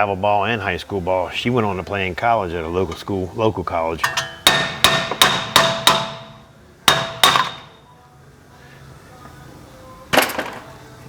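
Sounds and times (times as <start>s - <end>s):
hammer striking steel: 4.0s - 7.8s.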